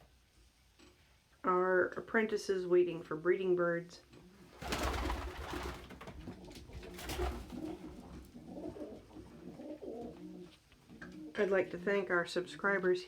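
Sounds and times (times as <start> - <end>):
pigeons cooing: 4.6 - 11.4.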